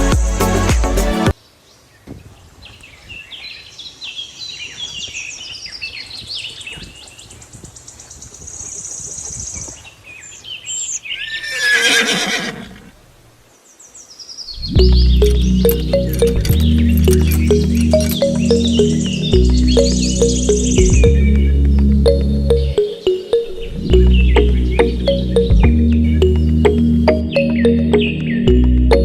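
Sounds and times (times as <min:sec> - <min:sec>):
horse whinnying: 0:11.2 - 0:12.9
high chirps: 0:14.5 - 0:29.0
steady high trill: 0:14.8 - 0:29.0.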